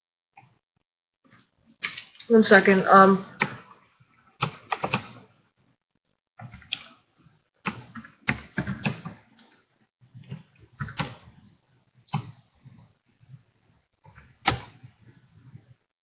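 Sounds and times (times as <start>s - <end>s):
computer keyboard typing: 4.4s - 5.2s, 7.6s - 9.2s.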